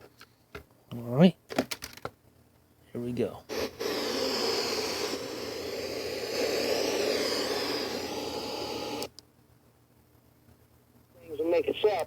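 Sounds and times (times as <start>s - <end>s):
radio static hiss: 3.6s - 9.1s, 11.2s - 12.0s.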